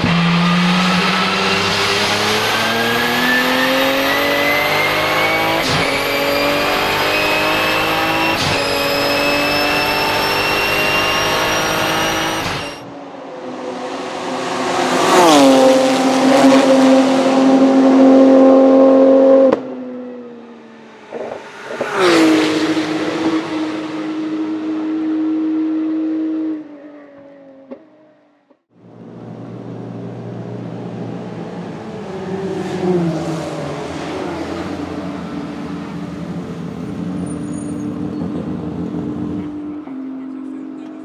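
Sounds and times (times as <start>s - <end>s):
high turbo whistle: 0.0s - 12.9s
car engine accelerating hard: 0.0s - 20.4s, 28.8s - 41.0s.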